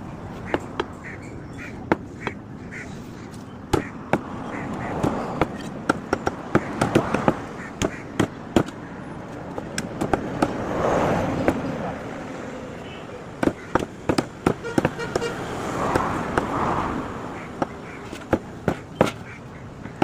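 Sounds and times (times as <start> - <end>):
bird calls: 0.2 - 9.1, 17.3 - 20.0.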